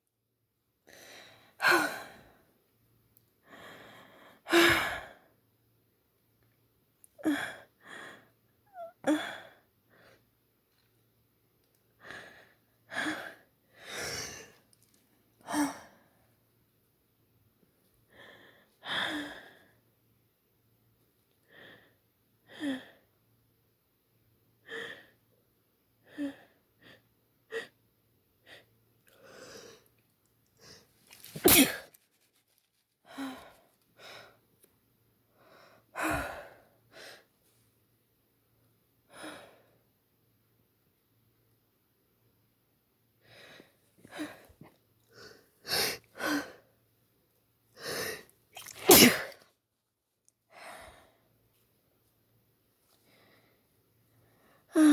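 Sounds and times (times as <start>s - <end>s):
woman sneezing: 31.2s - 31.8s, 48.6s - 49.4s.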